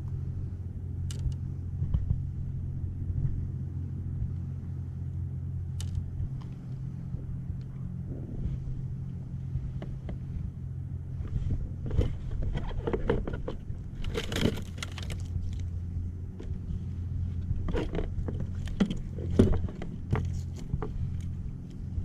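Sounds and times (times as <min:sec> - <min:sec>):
steady low hum: 0:00.0 - 0:22.0
clicks knocks and rattles: 0:11.9 - 0:15.6.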